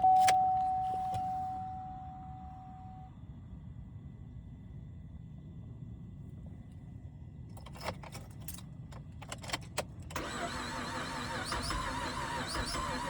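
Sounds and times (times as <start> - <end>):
steady wavering tone noise: 0.4 - 3.1
car starter clicking rapidly: 10.1 - 13.0.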